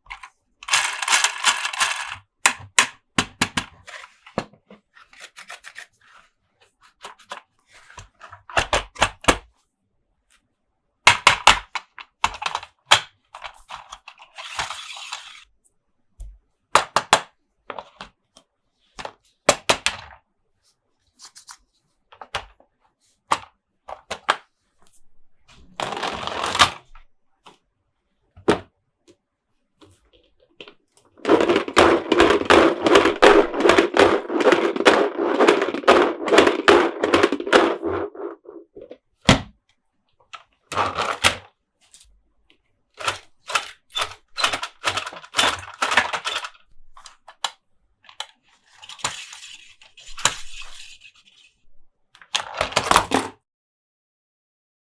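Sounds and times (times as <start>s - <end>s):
plastic toys tapping and clicking: 0.0s - 6.1s, 11.0s - 15.4s, 16.2s - 18.2s, 23.3s - 24.5s, 29.8s - 53.4s
plastic toys rattling: 0.1s - 2.2s, 30.6s - 39.4s, 43.0s - 53.3s.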